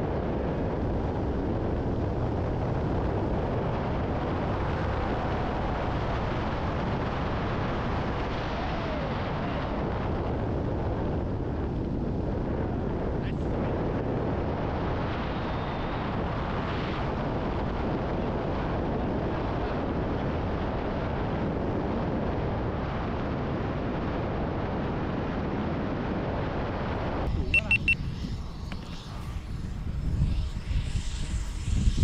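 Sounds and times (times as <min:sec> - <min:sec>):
heavy wind on microphone: 0:00.0 - 0:32.0
short high beeps: 0:27.5 - 0:28.0.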